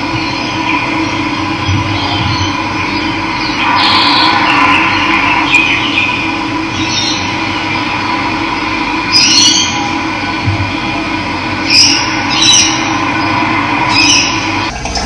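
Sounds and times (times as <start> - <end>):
birds chirping: 0.0 - 14.7
loud rising bird call: 0.4 - 10.2, 11.6 - 14.7
water rushing: 3.6 - 14.9.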